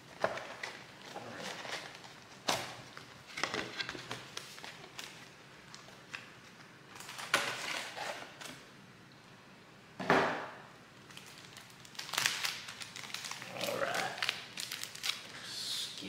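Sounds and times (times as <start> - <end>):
card packs rustling: 0.0 - 8.6, 11.0 - 15.3.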